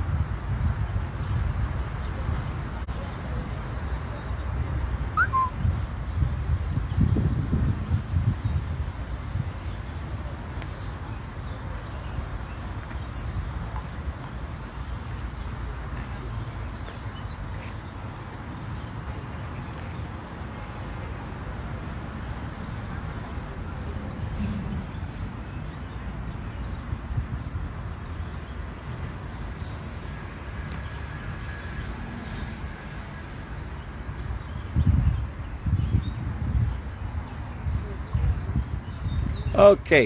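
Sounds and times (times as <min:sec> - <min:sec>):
faint bird chirps: 0:05.2 - 0:05.6.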